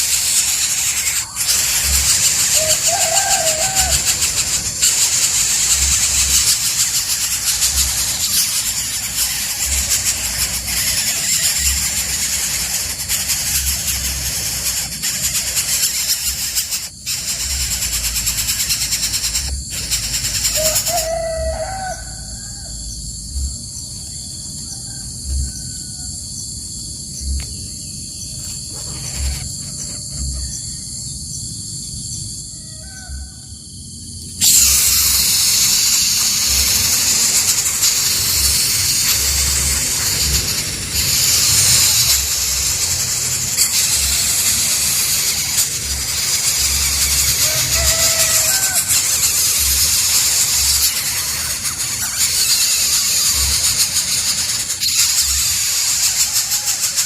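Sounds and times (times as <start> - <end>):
harsh high hiss: 0.0 - 21.8, 34.4 - 57.0
high-pitched insect drone: 0.0 - 57.0.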